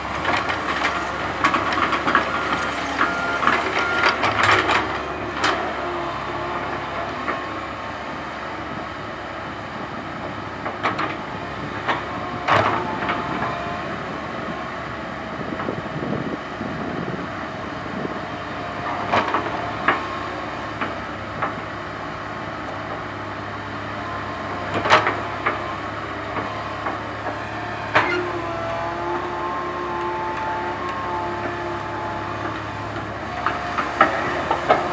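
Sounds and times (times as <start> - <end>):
excavator diesel engine running: 0.0 - 34.9
hydraulic whine: 18.8 - 34.9.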